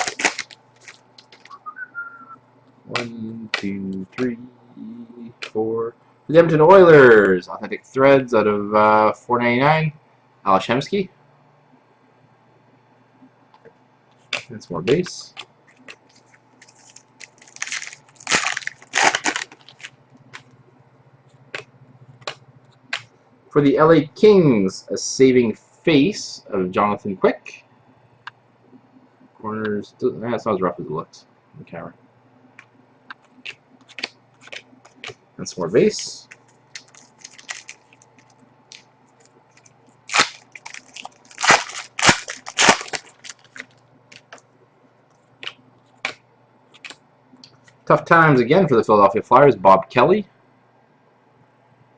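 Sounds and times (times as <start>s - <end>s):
foil wrappers crinkling: 0.0s - 1.6s, 15.7s - 20.5s, 36.2s - 44.4s
cards being flicked through: 3.0s - 4.4s.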